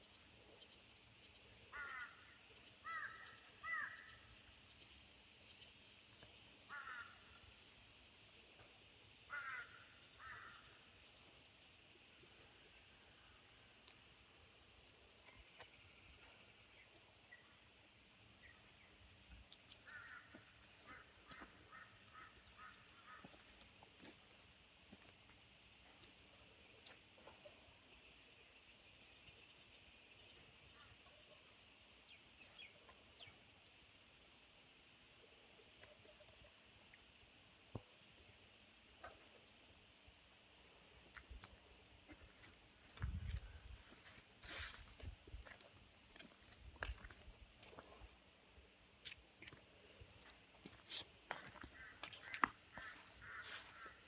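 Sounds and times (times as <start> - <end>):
faint high hiss: 0.0 - 52.0
bird harsh caw-like calls: 1.7 - 4.3, 6.6 - 7.5, 9.3 - 10.9, 19.8 - 23.6, 51.3 - 54.0.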